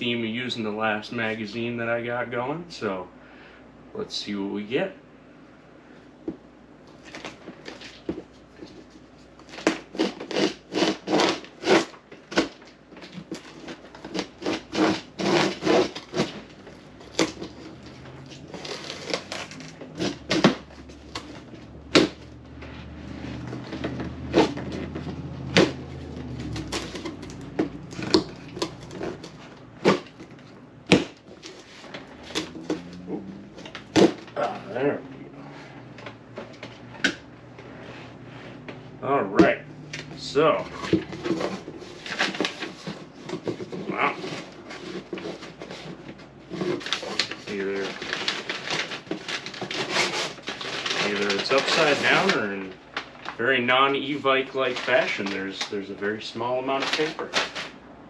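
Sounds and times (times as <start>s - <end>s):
scratching and ripping on cardboard: 7.0s - 35.0s, 40.6s - 57.8s.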